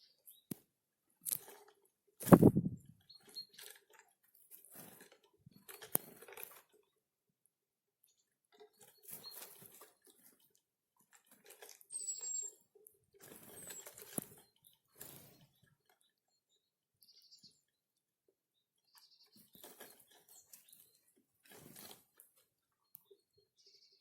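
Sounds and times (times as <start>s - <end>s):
birds pecking at seed: 1.2s - 6.8s, 8.1s - 12.5s, 13.2s - 16.0s, 19.3s - 22.4s.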